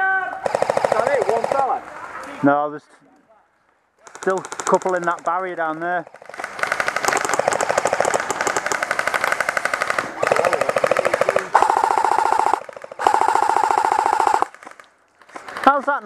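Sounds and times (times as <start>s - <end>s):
airsoft gun full-auto bursts: 0.4s - 1.8s, 4.0s - 15.8s.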